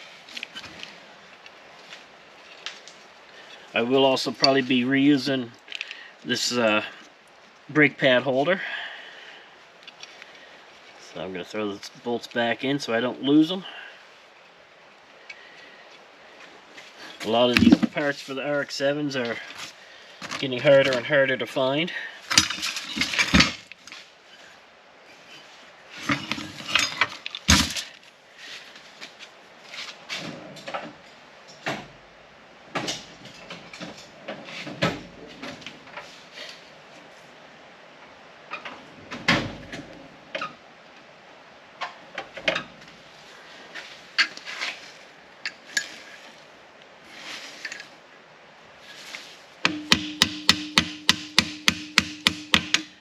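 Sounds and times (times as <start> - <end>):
metal parts clanking: 22.3 - 23.7, 26.0 - 27.9.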